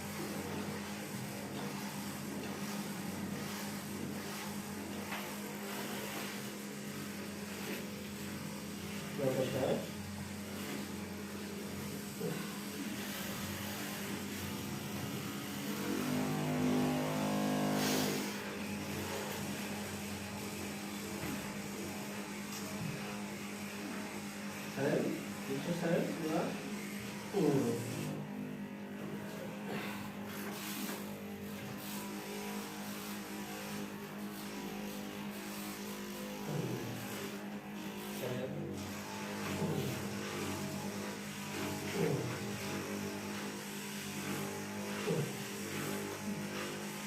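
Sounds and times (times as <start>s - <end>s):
electric motor hum: 0.1s - 47.0s
motor humming: 11.8s - 20.5s.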